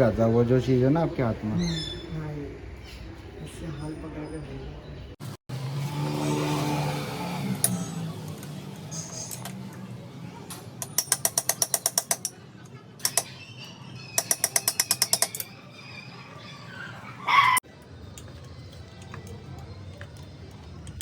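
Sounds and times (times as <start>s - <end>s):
ratchet wrench clicking: 10.8s - 12.4s, 13.0s - 13.3s, 14.2s - 15.5s.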